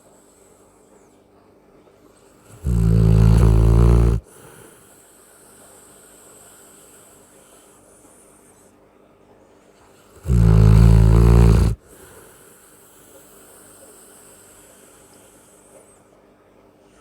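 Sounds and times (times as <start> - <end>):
faint breathing: 0.0 - 1.2, 2.0 - 16.2
loud deep snore: 2.5 - 4.6, 10.1 - 14.9.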